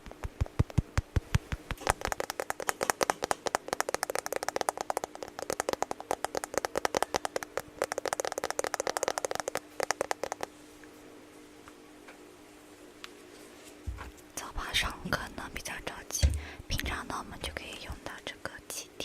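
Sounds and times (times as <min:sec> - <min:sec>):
fast dense tapping: 0:00.0 - 0:10.5.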